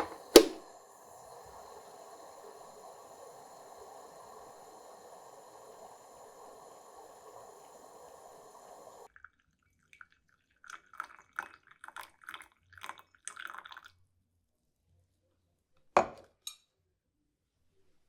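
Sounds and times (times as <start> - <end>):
coffee dripping and sputtering: 0.0 - 0.6, 1.5 - 13.9
espresso maker hissing: 0.0 - 9.1.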